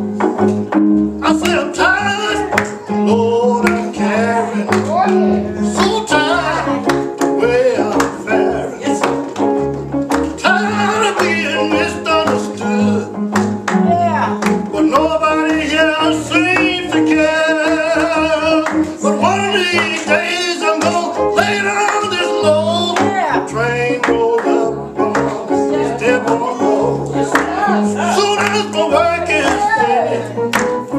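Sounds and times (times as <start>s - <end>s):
guitar-led band: 0.0s - 30.9s
walking bass line: 0.0s - 30.9s
voices singing long notes: 10.3s - 30.9s.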